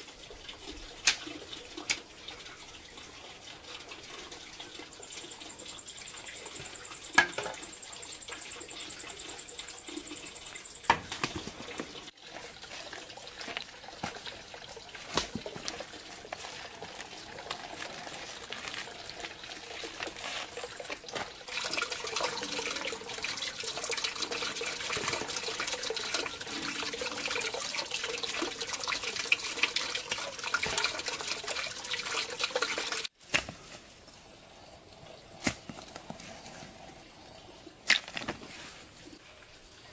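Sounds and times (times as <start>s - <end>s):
running water splashing: 10.9s - 33.5s.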